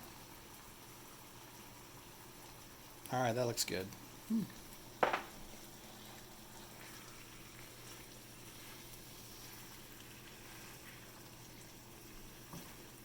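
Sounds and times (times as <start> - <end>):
chicken frying sizzle: 0.0 - 13.0
sharp knock: 5.0 - 5.3.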